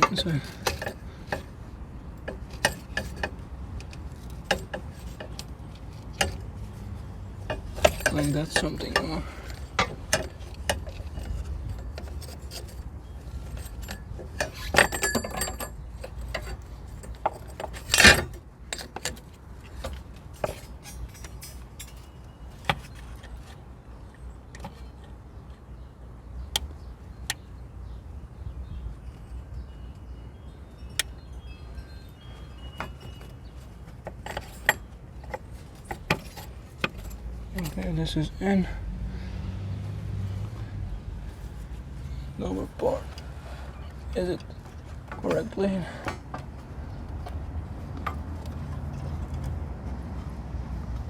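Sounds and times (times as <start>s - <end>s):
metal rattle: 0.0s - 23.6s, 32.6s - 38.3s
metallic clinks and scrapes: 0.0s - 25.1s, 29.0s - 38.8s.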